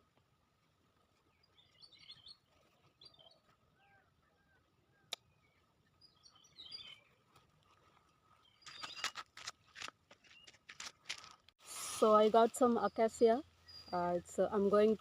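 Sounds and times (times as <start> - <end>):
bird chirps and calls: 5.4 - 7.1.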